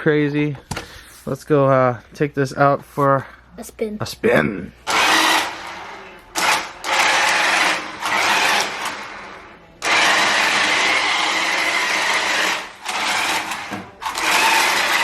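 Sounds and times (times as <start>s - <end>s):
toy car electric motor whining: 4.9s - 5.8s, 6.4s - 15.0s.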